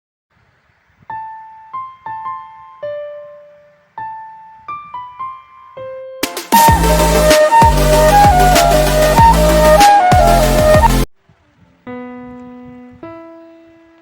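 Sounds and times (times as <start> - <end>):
slow piano-like melody: 1.1 - 11.1, 11.8 - 14.0
electronic music with heavy bass: 6.2 - 11.1.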